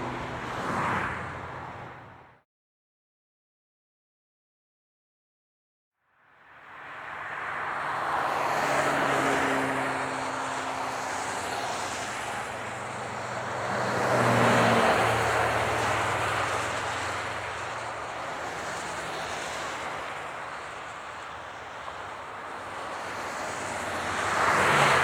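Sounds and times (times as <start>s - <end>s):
highway traffic: 0.0s - 2.4s, 6.3s - 25.0s
vehicle passing by: 6.7s - 25.0s.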